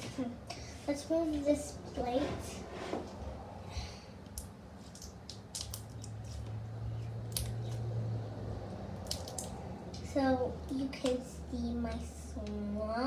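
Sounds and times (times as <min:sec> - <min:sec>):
slime squishing with sticky clicks: 0:04.3 - 0:06.5.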